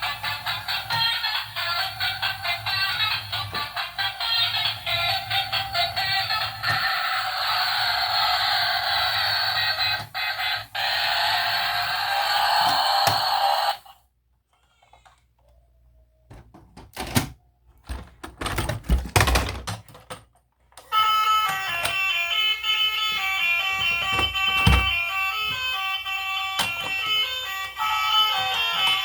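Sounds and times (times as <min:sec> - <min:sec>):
plastic toys clicking and knocking: 0:00.0 - 0:07.2, 0:16.3 - 0:22.2, 0:23.1 - 0:25.8, 0:26.4 - 0:29.0.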